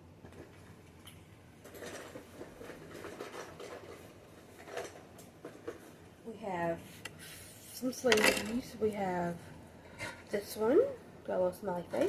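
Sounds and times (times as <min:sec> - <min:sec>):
plastic toys clicking and rustling: 0:01.6 - 0:05.9, 0:08.1 - 0:08.6.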